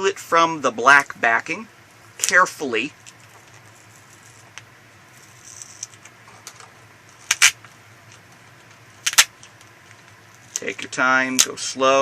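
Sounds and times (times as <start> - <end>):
adhesive tape peeling: 7.1 - 10.6.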